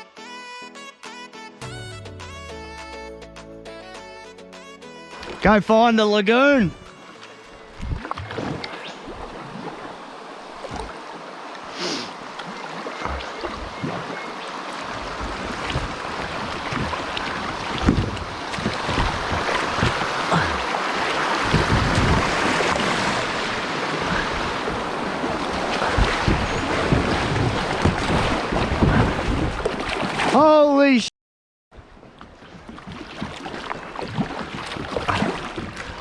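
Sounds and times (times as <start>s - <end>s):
water splashing around kayak: 5.1s - 5.6s, 6.4s - 30.6s, 31.8s - 36.0s
wind buffeting microphone: 14.9s - 29.8s.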